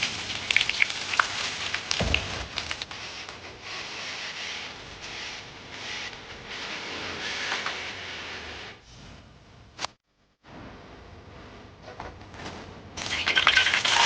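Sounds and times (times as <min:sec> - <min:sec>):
food sizzling in a wok: 0:00.0 - 0:02.4, 0:13.0 - 0:14.0
dull thump: 0:01.9 - 0:02.8.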